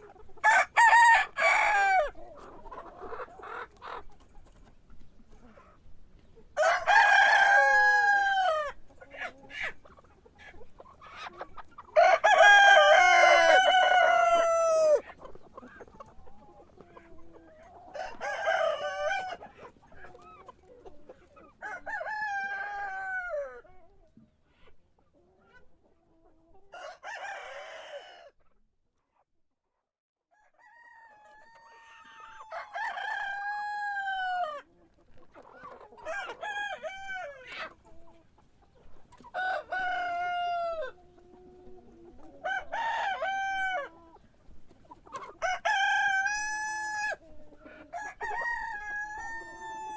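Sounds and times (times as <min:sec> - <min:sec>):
roosters crowing: 0:00.0 - 0:02.2, 0:06.6 - 0:08.9, 0:11.8 - 0:15.1, 0:17.6 - 0:19.5, 0:21.6 - 0:23.6, 0:26.7 - 0:28.4, 0:30.4 - 0:34.7, 0:36.0 - 0:37.7, 0:39.2 - 0:41.1, 0:42.2 - 0:44.0, 0:45.2 - 0:47.2, 0:47.8 - 0:49.9.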